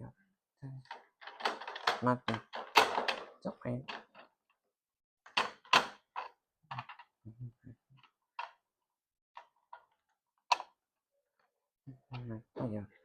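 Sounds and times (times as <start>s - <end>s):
objects clicking and knocking: 0.8s - 4.6s, 5.3s - 7.2s, 8.0s - 8.6s.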